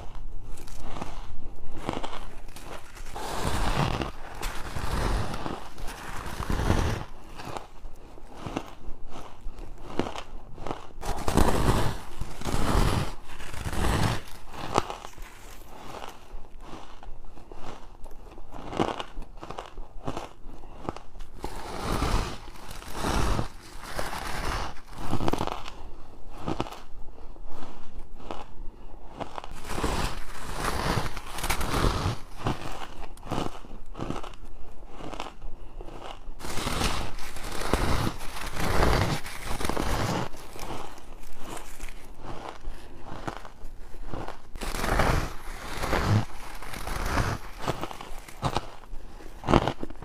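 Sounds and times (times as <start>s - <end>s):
crunchy bites into ice: 29.2s - 50.0s.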